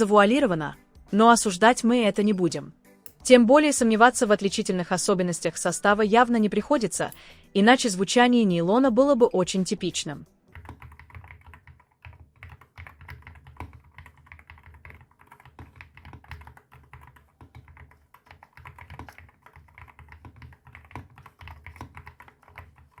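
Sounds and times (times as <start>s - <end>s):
mechanical keyboard typing: 10.5s - 23.0s.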